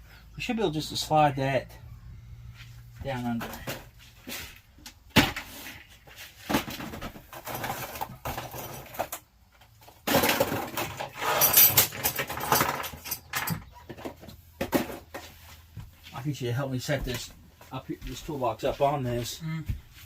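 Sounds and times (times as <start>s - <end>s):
table scraping and rattling: 5.2s - 9.2s, 10.0s - 15.4s.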